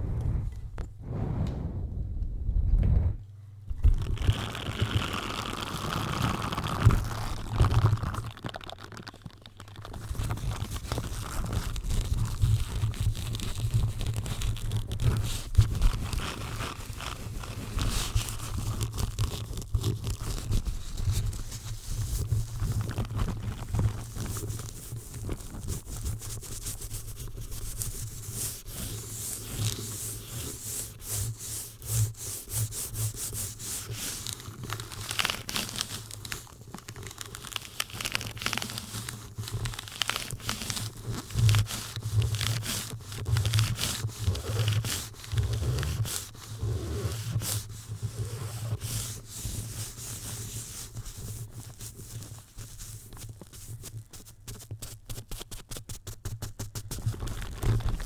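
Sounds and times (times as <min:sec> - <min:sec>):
microphone handling thumps: 0:00.0 - 0:04.4
microphone scratching: 0:00.0 - 0:08.4.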